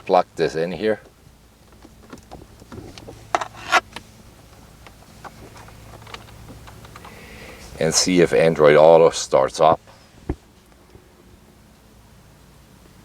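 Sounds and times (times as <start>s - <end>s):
cable clicks and rustles: 1.0s - 7.8s.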